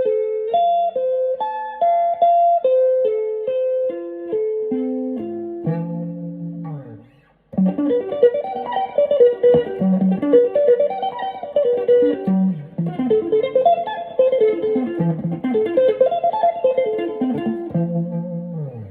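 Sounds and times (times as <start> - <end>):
electric guitar melody: 0.0 - 18.9.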